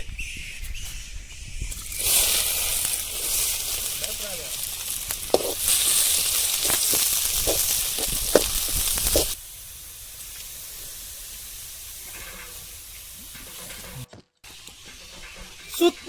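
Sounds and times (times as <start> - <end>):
garlic and onions sizzling in oil: 1.6 - 16.0
stirring knocks in pan: 5.3 - 5.6, 6.6 - 9.4.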